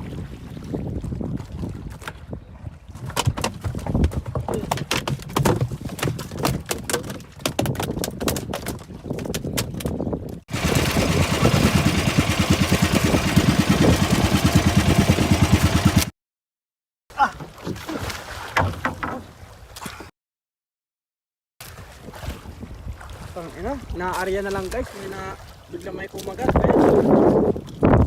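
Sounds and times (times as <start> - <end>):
low wind: 0.0 - 16.1, 21.6 - 28.0
water noise: 0.0 - 16.1, 17.1 - 20.1, 21.6 - 28.0
knocks and clatter: 3.0 - 10.0, 18.6 - 19.4
boat engine running: 10.5 - 16.1.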